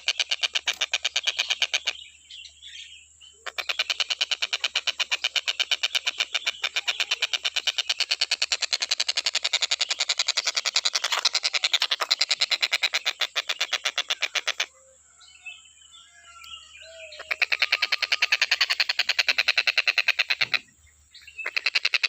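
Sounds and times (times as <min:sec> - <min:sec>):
kingfisher rattling chatter: 0:03.5 - 0:14.7
faint bird chirps and whistles: 0:09.5 - 0:22.0.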